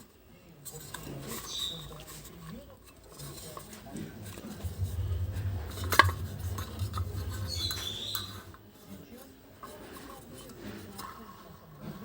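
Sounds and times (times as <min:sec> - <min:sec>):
low rumble: 0:04.6 - 0:08.7.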